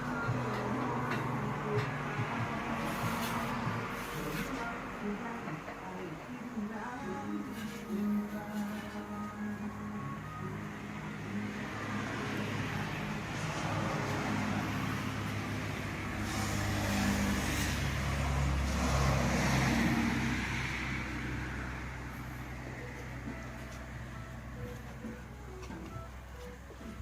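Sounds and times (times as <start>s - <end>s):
vehicle engine running: 10.4s - 27.0s.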